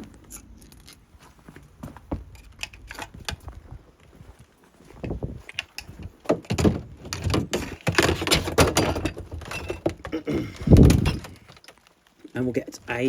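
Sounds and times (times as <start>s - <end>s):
plastic parts knocking and clattering: 5.0s - 11.8s.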